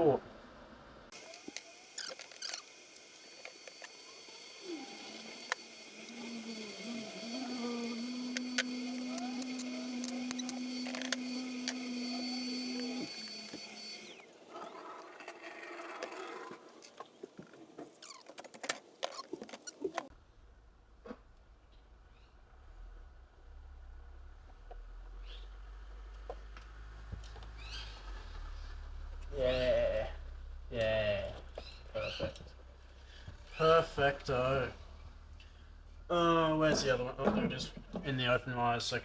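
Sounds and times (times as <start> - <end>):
power tool running: 1.1 - 14.4.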